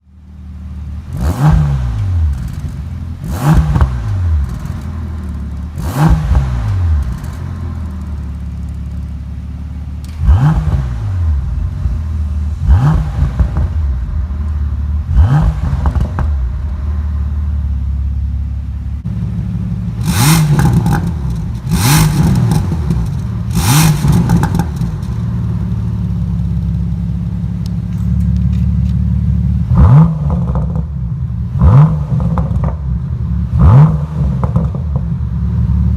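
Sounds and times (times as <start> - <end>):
car engine idling and revving: 0.0 - 35.9.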